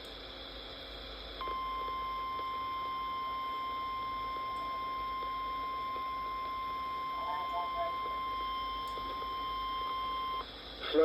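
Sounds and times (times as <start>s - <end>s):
faint radio hiss: 3.8s - 11.0s.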